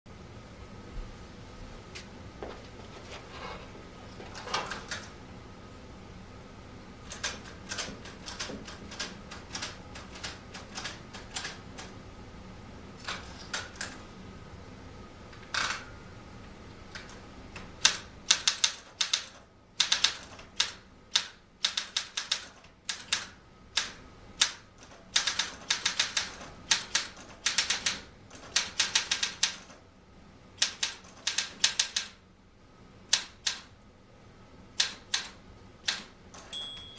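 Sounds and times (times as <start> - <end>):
typewriter keystrokes: 7.1 - 11.9, 13.0 - 14.0, 17.0 - 29.8, 30.6 - 32.2, 33.1 - 33.7, 34.8 - 36.6.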